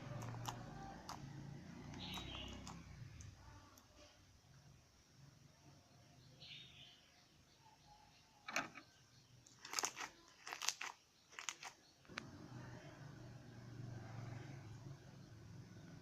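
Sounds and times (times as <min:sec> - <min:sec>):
sharp clicks and crackles: 0:00.0 - 0:03.9, 0:09.4 - 0:12.3
faint low hum: 0:00.0 - 0:16.0.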